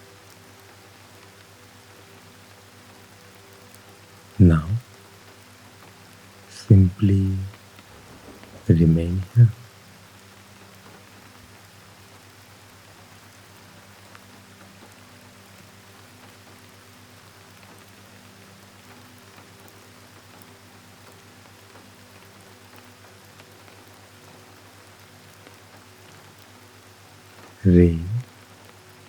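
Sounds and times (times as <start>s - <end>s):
rain falling softly: 0.0s - 29.0s
faint low hum: 4.4s - 4.9s, 6.5s - 9.7s, 27.6s - 28.3s.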